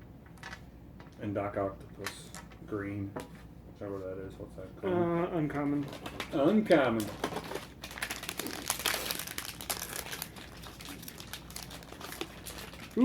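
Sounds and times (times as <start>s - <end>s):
foil pack crinkling: 5.8s - 13.0s.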